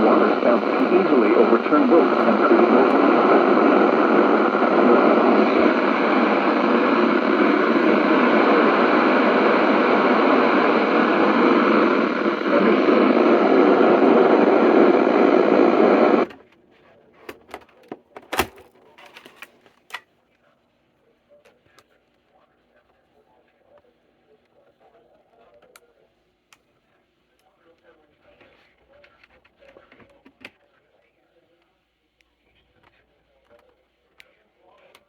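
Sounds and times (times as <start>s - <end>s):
radio static hiss: 0.0s - 16.3s.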